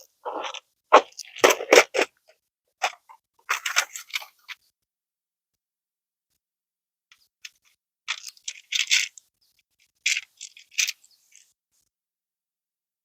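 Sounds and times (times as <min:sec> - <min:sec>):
small hard objects clinking: 0:08.1 - 0:09.2.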